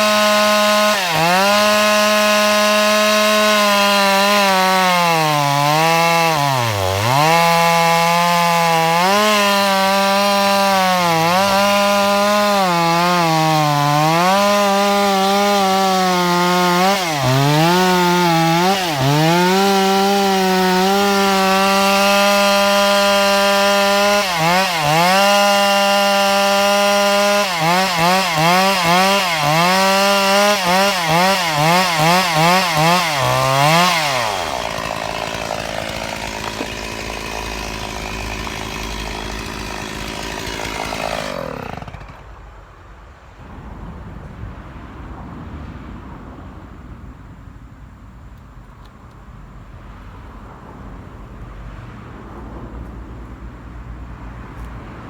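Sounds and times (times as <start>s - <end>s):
chainsaw running: 0.0s - 42.2s.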